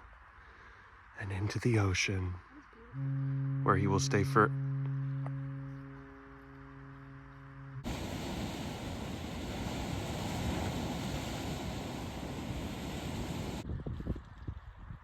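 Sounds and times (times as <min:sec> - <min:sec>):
held musical chord: 0:03.0 - 0:07.8
wind and surf at shore: 0:07.8 - 0:14.0.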